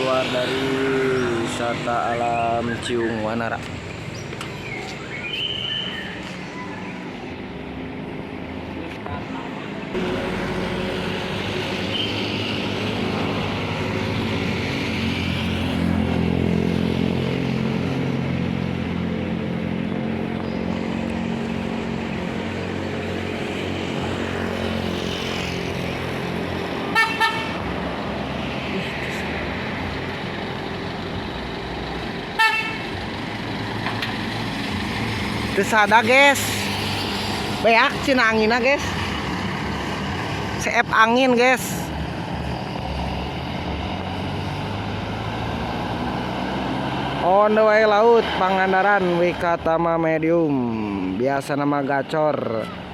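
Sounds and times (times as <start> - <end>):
bus diesel engine: 0.0 - 52.9
short horn toots: 26.9 - 27.6.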